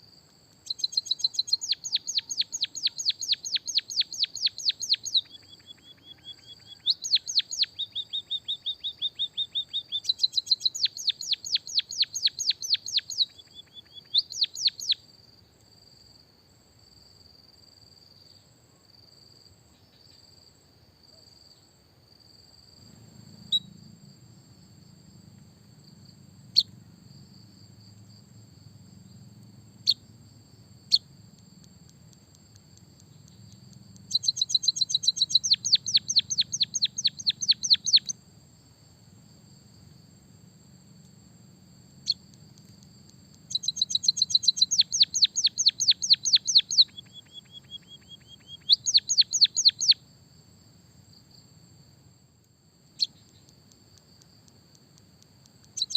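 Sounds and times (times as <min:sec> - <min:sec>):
high cricket-like whine: 0:00.0 - 0:55.9
bird chirping and trilling: 0:00.6 - 0:15.0, 0:33.2 - 0:38.2, 0:43.5 - 0:50.0
held bird whistle: 0:00.6 - 0:15.0, 0:33.2 - 0:38.2, 0:43.5 - 0:50.0, 0:55.7 - 0:55.9.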